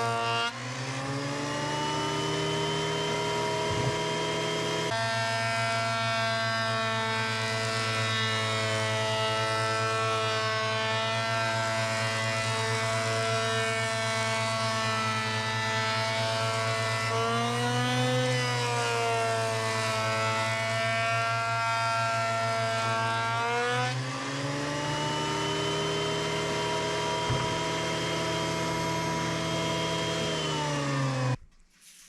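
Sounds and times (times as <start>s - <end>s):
motor running: 0.0s - 5.0s, 23.9s - 31.4s.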